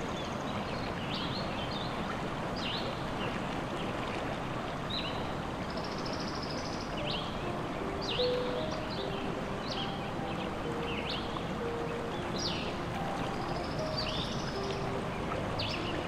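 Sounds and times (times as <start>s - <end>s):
songbirds chirping: 0.0s - 16.0s
bird trill: 5.8s - 16.0s.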